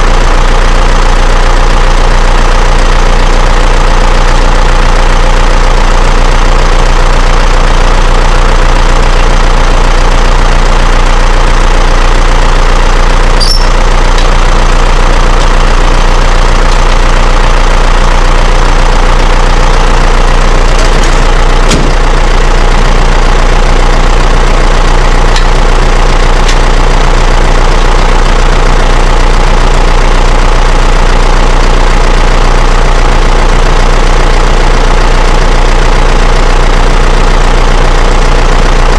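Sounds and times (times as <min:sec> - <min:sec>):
tractor diesel engine idling: 0:00.0 - 0:38.9
high squeak: 0:13.4 - 0:14.3.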